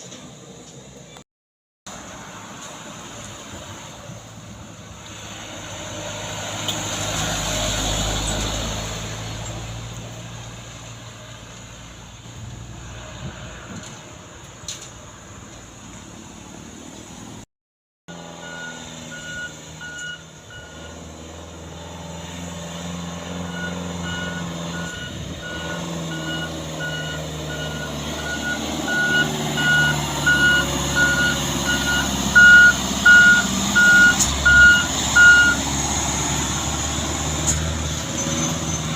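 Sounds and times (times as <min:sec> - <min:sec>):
diesel truck engine running: 0:18.1 - 0:38.9
truck alarm beeper: 0:18.2 - 0:21.1, 0:23.4 - 0:35.7.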